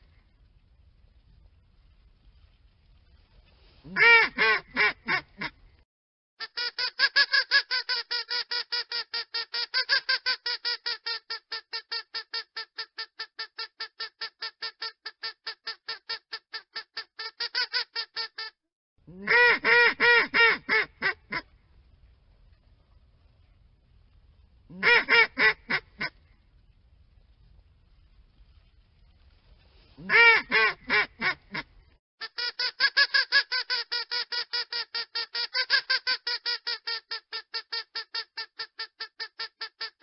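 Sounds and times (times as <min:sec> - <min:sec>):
duck quacking rapidly: 0:03.9 - 0:05.6, 0:19.1 - 0:21.5, 0:24.7 - 0:26.2, 0:30.0 - 0:40.0
louder lower quacks: 0:03.9 - 0:05.6, 0:19.1 - 0:21.5, 0:24.7 - 0:26.2, 0:30.0 - 0:31.7.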